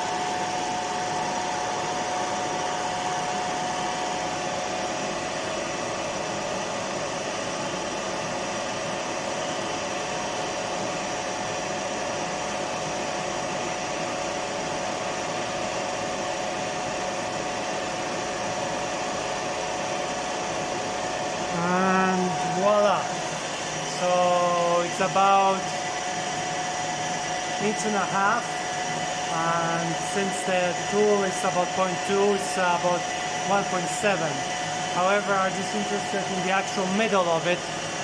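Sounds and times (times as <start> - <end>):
milling machine humming: 0.0 - 38.0
constant whine: 20.3 - 38.0.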